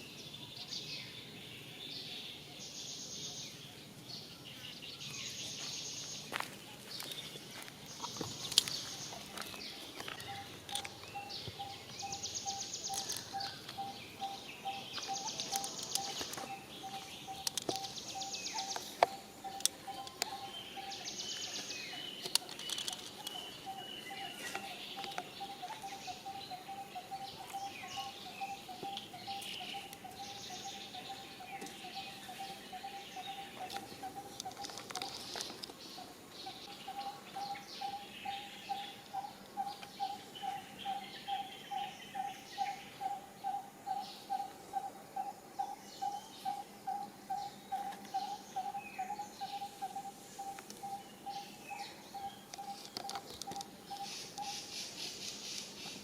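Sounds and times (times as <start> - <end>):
rapidly repeated bird or insect call: 0.0 - 56.0
light clicks and rustles: 22.2 - 23.4.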